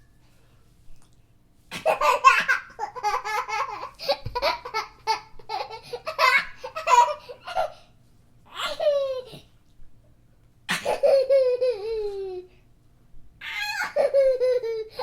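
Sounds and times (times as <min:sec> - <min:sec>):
baby laughing: 0:01.7 - 0:07.8, 0:08.5 - 0:09.5, 0:10.7 - 0:12.5, 0:13.4 - 0:15.0.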